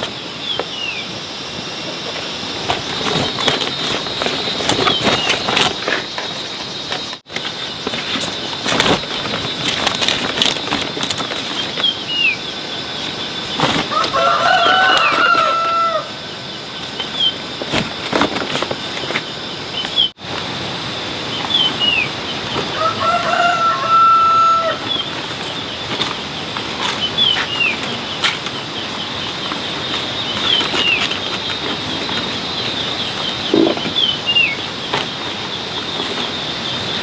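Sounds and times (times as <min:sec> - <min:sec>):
rooster crowing: 0:13.8 - 0:16.4, 0:22.6 - 0:25.1.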